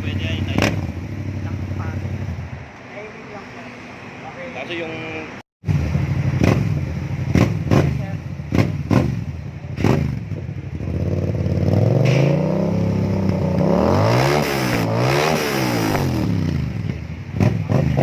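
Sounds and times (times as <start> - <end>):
motorcycle engine revving: 0.0 - 2.6, 5.6 - 18.0.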